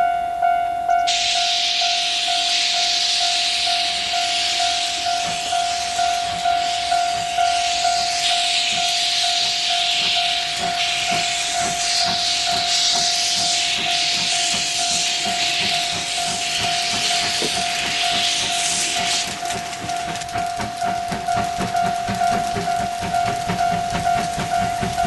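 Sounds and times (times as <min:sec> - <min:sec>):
steady held tone: 0:00.0 - 0:25.0
hiss of escaping steam: 0:01.1 - 0:25.0.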